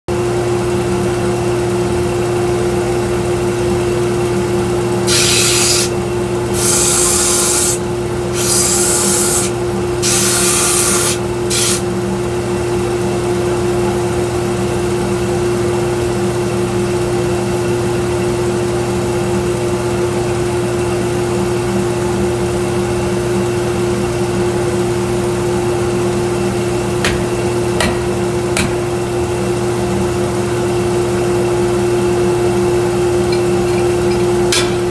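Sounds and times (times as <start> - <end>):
belt sander running: 4.7 - 12.0, 25.3 - 34.9.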